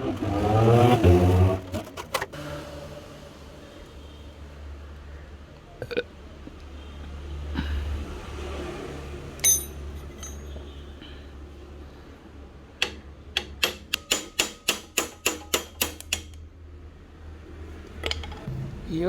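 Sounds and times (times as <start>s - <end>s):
metal clank: 9.4s - 10.6s.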